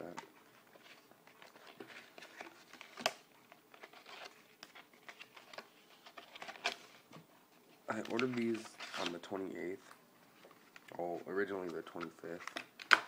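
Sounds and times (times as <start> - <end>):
packaging rustling: 0.4 - 7.1, 7.9 - 11.0.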